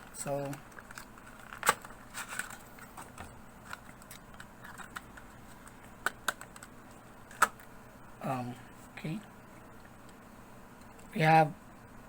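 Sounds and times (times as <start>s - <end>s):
plastic packaging clicks and crinkles: 0.0s - 7.7s.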